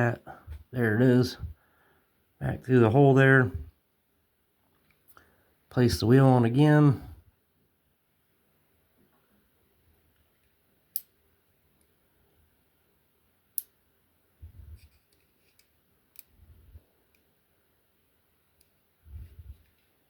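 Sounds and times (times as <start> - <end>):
small sharp clicks: 10.1 - 11.2, 13.5 - 13.8, 14.8 - 16.4.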